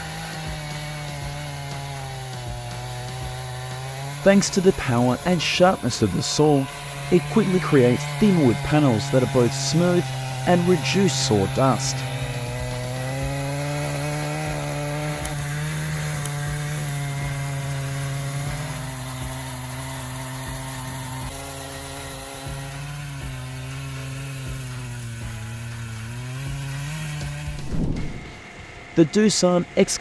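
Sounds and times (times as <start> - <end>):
chainsaw cutting wood: 0.0 - 29.0.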